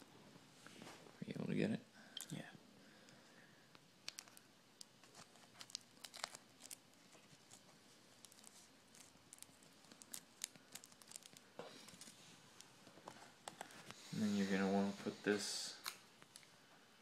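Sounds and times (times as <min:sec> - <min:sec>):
faint tape crinkling: 0:03.0 - 0:14.0, 0:15.7 - 0:16.8.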